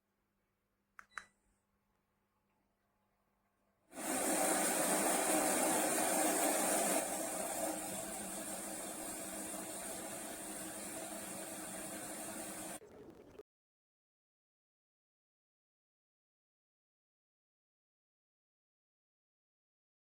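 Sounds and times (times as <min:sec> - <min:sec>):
ceiling fan air rushing: 0:04.0 - 0:12.8.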